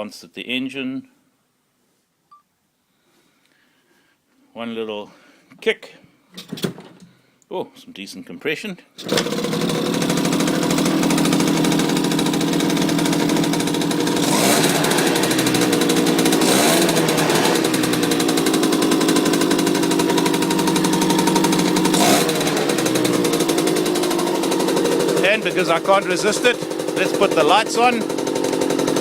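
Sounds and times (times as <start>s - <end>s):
moped engine revving: 9.0s - 29.0s.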